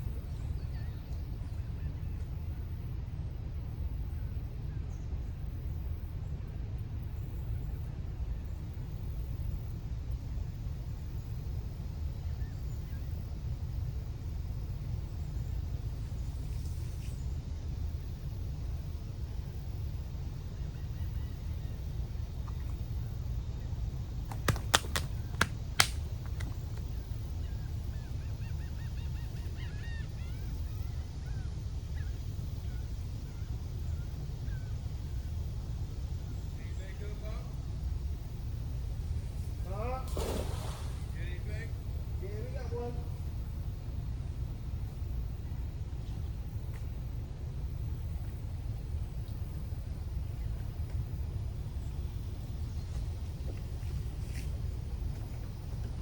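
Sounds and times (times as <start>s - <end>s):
sharp clicks: 24.3s - 26.9s
steady low rumble: 40.8s - 56.0s.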